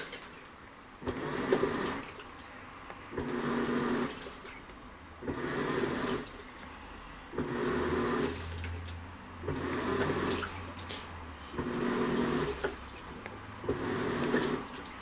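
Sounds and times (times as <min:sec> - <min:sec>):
washing machine motor humming: 0:00.0 - 0:15.0
water sloshing in tub: 0:00.0 - 0:15.0.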